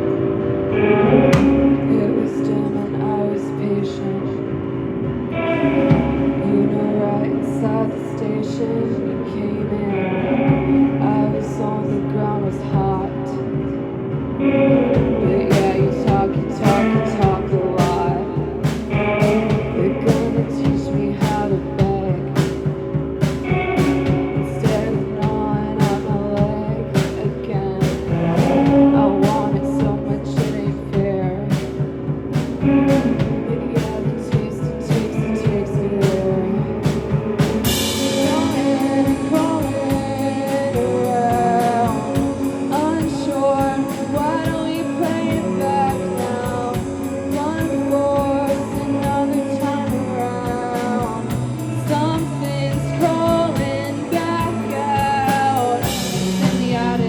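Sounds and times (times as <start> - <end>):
person singing: 0.0 - 4.6, 5.2 - 13.7, 14.4 - 31.8, 32.6 - 57.0
guitar: 0.0 - 57.0
rock band playing live: 0.0 - 57.0
drum kit: 0.8 - 2.0, 5.1 - 6.8, 12.5 - 57.0
cymbals: 36.8 - 43.2.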